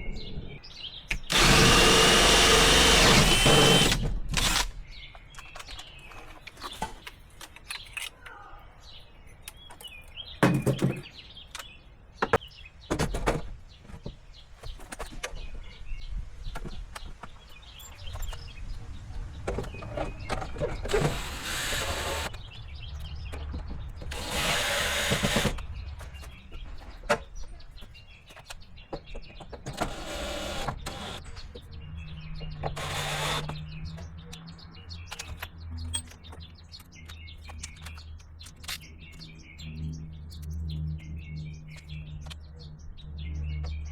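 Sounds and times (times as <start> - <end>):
birds chirping faintly: 0.0 - 43.9
cordless drill driving screws: 1.3 - 4.7, 20.8 - 22.4, 24.1 - 25.6, 29.7 - 31.2, 32.7 - 33.6.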